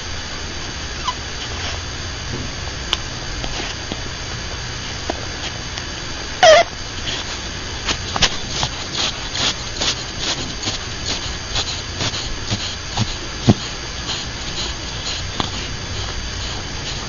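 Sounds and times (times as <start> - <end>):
loud wavering squeak: 6.4 - 6.7
rabbit snoring: 6.4 - 17.0.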